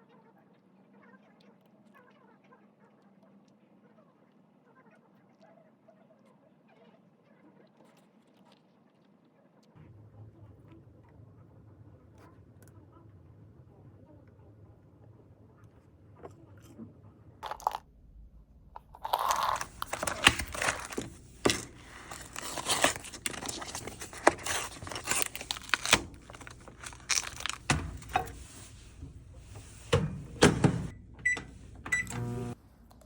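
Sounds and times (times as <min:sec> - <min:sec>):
rustling tearing noise: 0:18.9 - 0:29.0.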